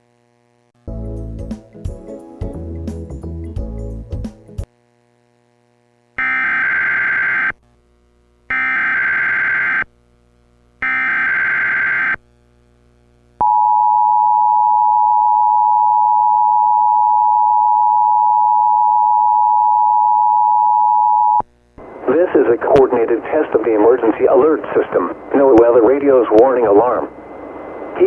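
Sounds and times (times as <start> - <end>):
buzzy digital data bursts: 6.2 - 7.6, 8.5 - 9.9, 10.8 - 12.2.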